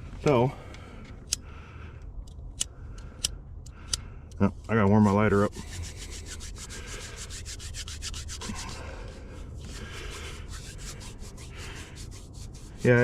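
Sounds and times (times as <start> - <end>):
hands rubbing a lighter: 5.4 - 13.0.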